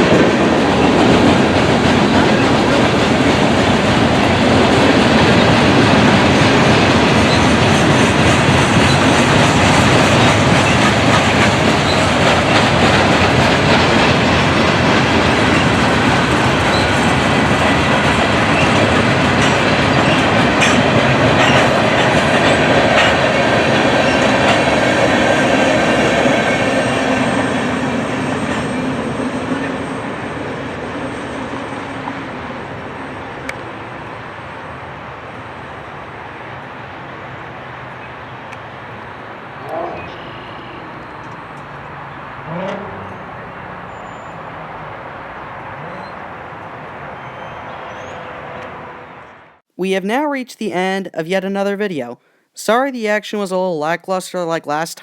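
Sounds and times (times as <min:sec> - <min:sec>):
train wheels clacking on rail joints: 0:00.0 - 0:29.7.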